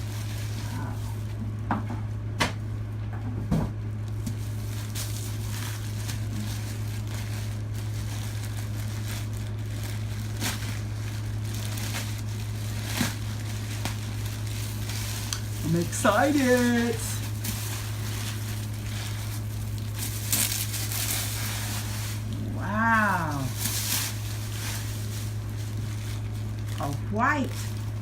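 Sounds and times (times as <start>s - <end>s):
packaging crinkling and rustling: 0.0s - 1.5s, 4.0s - 28.0s
steady hum: 0.0s - 28.0s.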